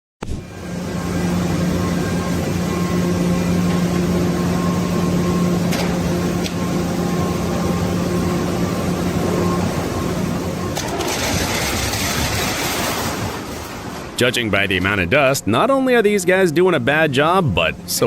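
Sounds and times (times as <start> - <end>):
motor humming: 0.2 - 14.2
rushing noise: 7.9 - 14.6.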